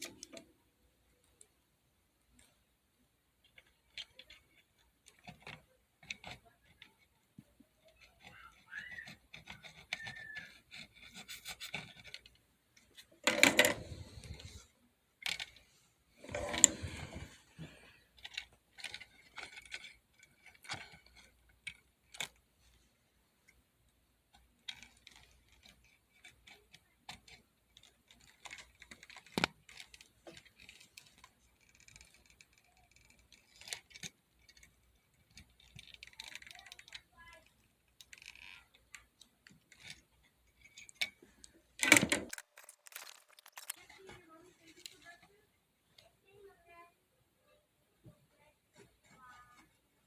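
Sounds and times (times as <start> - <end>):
hand tools scraping circuit board: 7.8 - 14.6.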